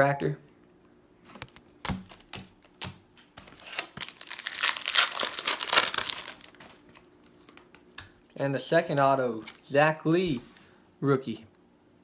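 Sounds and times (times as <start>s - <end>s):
wrapper being ripped open: 3.6s - 6.8s.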